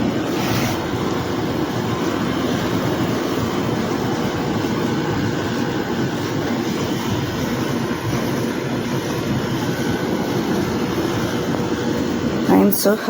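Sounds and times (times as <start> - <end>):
air conditioner humming: 10.4 - 13.0.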